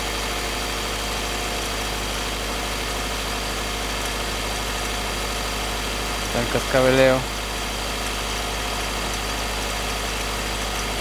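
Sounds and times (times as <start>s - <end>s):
light engine rattle: 0.0s - 11.0s
car engine running: 2.2s - 11.0s.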